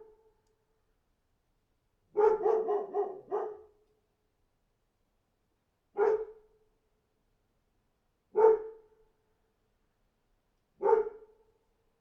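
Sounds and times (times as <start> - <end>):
dog barking: 2.1 - 3.8, 6.0 - 6.4, 8.4 - 8.8, 10.8 - 11.3.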